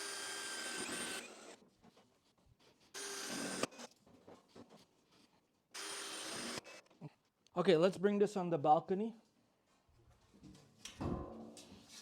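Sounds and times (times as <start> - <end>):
cordless drill driving screws: 0.0 - 1.6, 3.0 - 3.9, 5.8 - 6.9.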